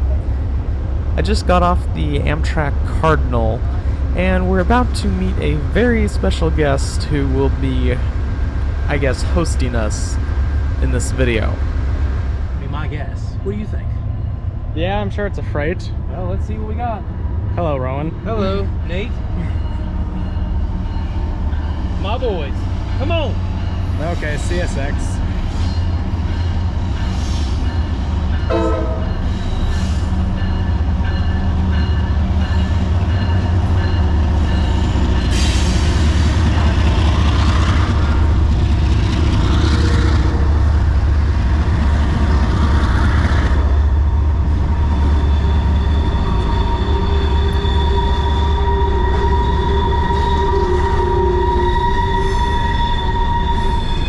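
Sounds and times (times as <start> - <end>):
diesel locomotive rumble: 0.0 - 54.0
train wheels and cars rolling: 0.0 - 54.0
high-pitched wheel squeal: 44.8 - 54.0.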